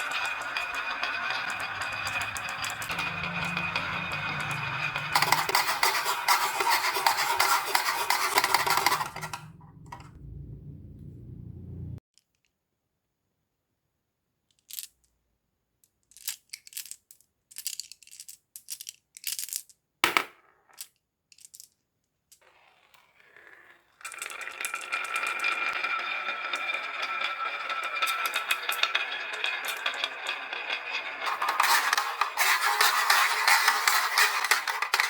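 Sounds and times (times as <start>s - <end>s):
marbles clattering down wooden run: 0.0s - 9.5s, 23.3s - 35.0s.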